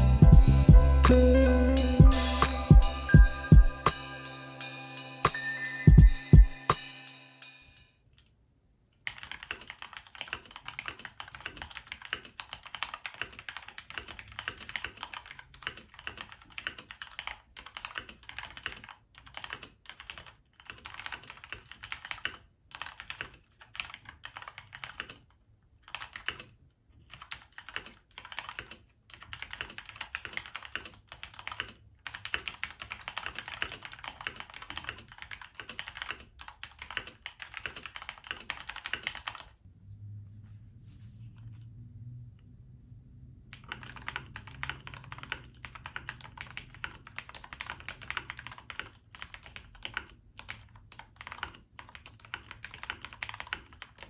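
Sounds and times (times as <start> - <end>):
mechanical keyboard typing: 9.0 - 39.6, 43.5 - 54.0.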